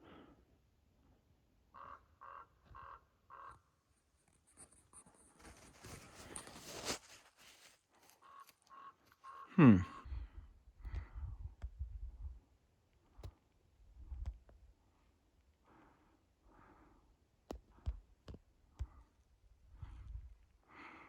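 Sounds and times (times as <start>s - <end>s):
bird calling: 8.2s - 9.6s.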